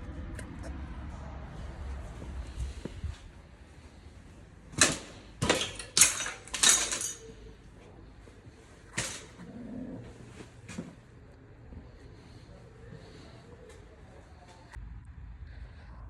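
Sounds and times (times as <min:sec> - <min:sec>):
metal tools clanking and scraping: 0:04.8 - 0:07.6, 0:08.9 - 0:09.5.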